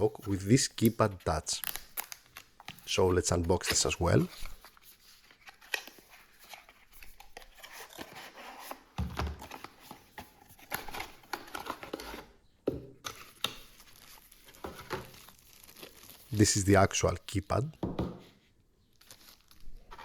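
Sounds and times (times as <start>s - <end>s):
packaging rustling and crinkling: 0.7s - 12.2s, 13.0s - 16.6s, 18.9s - 20.0s.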